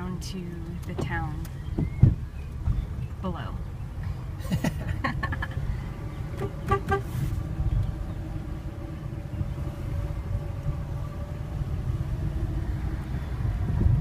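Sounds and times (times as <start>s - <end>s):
car driving rumble: 0.0s - 14.0s
car horn beeping: 6.3s - 7.4s.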